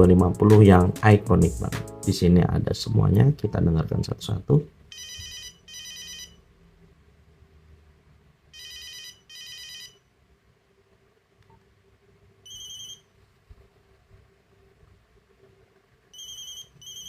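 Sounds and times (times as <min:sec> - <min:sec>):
buzzy phone ringtone: 0:04.9 - 0:06.5, 0:08.5 - 0:10.1, 0:12.4 - 0:13.1, 0:16.1 - 0:17.0.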